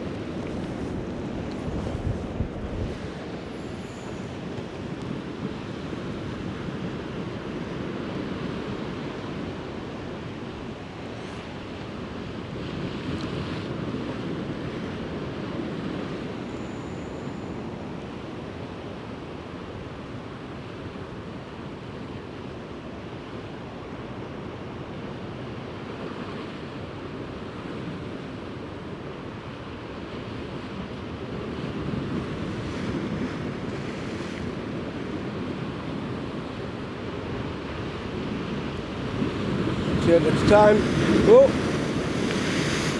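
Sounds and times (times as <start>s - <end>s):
wind buffeting microphone: 0.0s - 10.8s
sea waves breaking on rocks: 31.1s - 42.9s.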